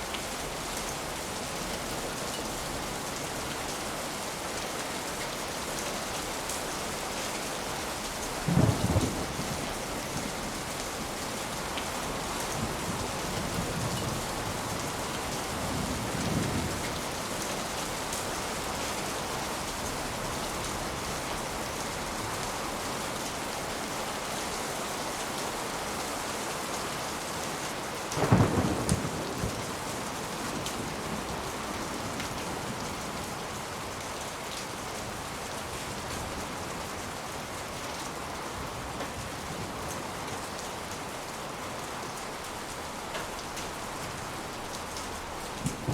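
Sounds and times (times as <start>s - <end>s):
steady rain: 0.0s - 45.9s
thunder rumbling: 28.2s - 29.9s.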